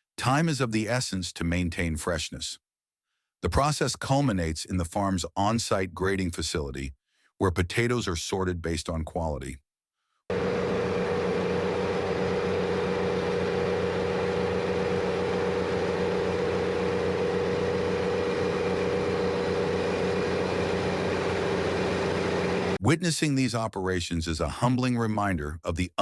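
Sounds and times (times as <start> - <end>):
heavy machinery humming: 10.3 - 22.8.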